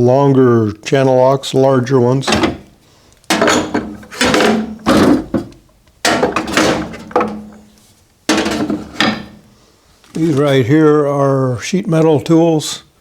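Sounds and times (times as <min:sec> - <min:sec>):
wrenches clunking into drawer: 0:02.2 - 0:09.5.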